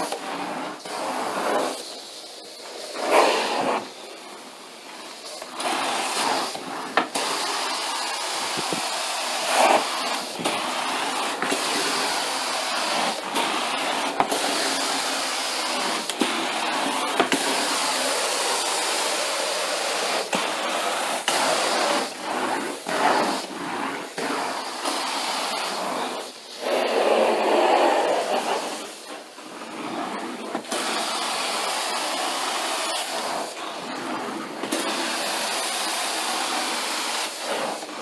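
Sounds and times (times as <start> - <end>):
carpet extraction wand rushing hiss: 5.0 - 29.1.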